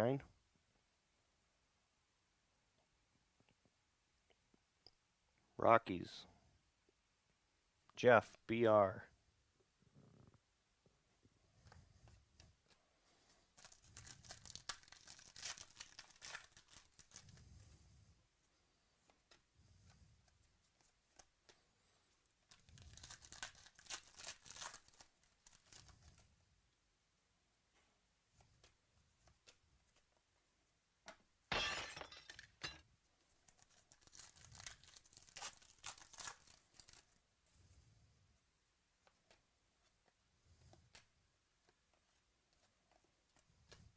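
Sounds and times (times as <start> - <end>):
foil wrapper tearing and crinkling: 13.6 - 17.4, 22.5 - 26.2, 33.5 - 37.2.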